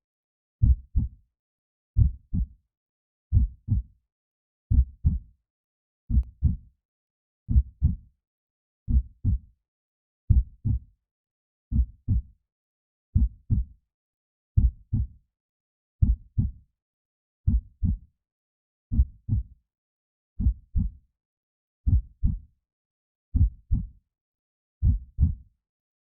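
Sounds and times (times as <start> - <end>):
slow heartbeat: 0.6 - 1.2, 2.0 - 2.6, 3.3 - 3.9, 4.7 - 5.3, 6.1 - 6.6, 7.5 - 8.0, 8.9 - 9.4, 10.3 - 10.8, 11.7 - 12.3, 13.2 - 13.7, 14.6 - 15.2, 16.0 - 16.6, 17.5 - 18.0, 18.9 - 19.5, 20.4 - 21.0, 21.9 - 22.4, 23.4 - 23.9, 24.8 - 25.4.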